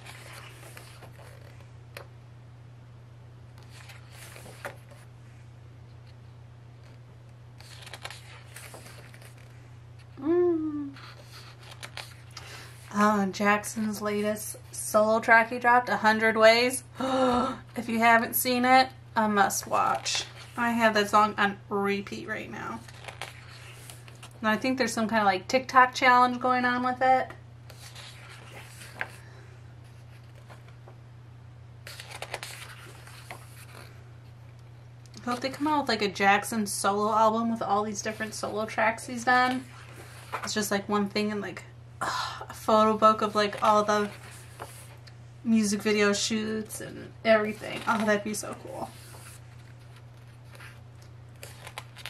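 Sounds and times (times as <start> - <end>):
pages rustling: 0.0 - 1.7, 3.6 - 5.1, 7.6 - 10.1, 11.0 - 12.9, 22.8 - 24.4, 27.7 - 30.9, 31.8 - 34.0, 39.4 - 40.5, 43.2 - 45.0, 47.5 - 52.0
low electrical hum: 0.0 - 52.0
person humming: 10.2 - 11.0.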